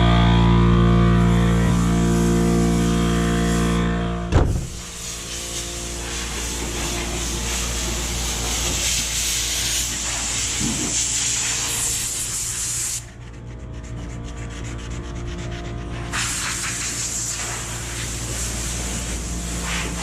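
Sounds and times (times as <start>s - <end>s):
low machine hum: 0.0s - 16.2s
air tool hissing: 4.4s - 13.2s, 16.1s - 20.0s.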